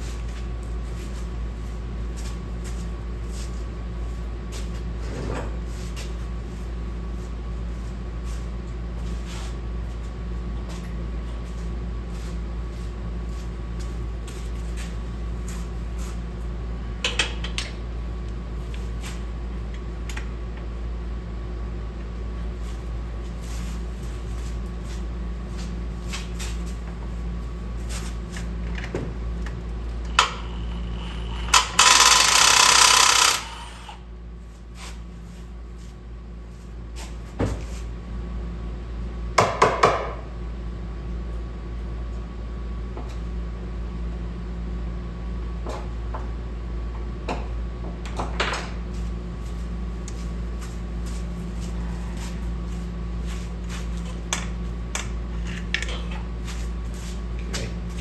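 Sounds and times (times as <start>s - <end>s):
steady low hum: 0.0s - 39.4s, 40.2s - 58.0s
hand tools clicking and knocking: 31.5s - 33.6s.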